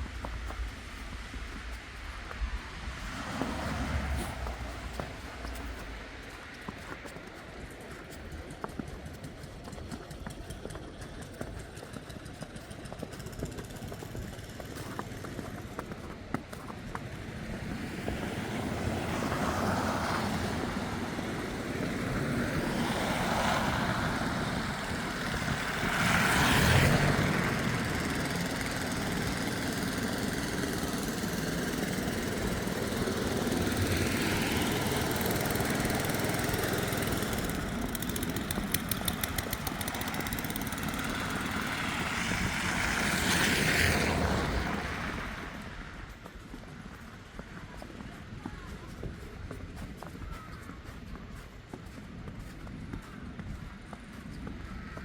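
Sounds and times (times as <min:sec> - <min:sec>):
passing vehicles rumbling: 0:00.0 - 0:06.8, 0:17.2 - 0:46.8
footsteps crunching in snow: 0:00.0 - 0:18.4, 0:45.3 - 0:55.0.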